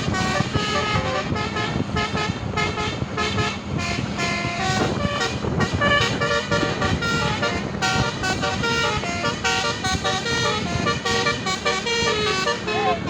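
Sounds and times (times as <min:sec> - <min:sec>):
multi-tone bus horn tune: 0:00.0 - 0:13.0.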